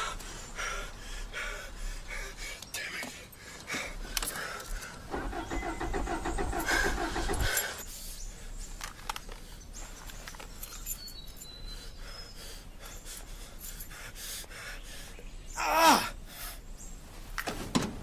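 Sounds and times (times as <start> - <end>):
car starter motor cranking: 4.4 - 7.8
high bird chirps: 5.2 - 6.5, 9.6 - 13.2.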